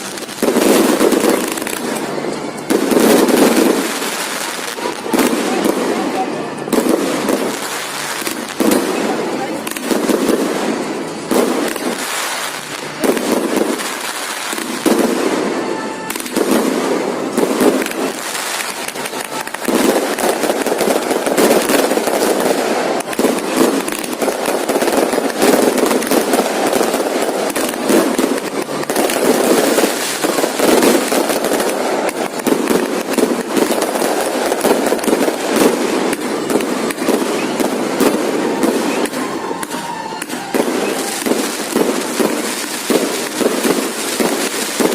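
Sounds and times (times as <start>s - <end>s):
fireworks bangs and crackles: 0.0s - 44.9s.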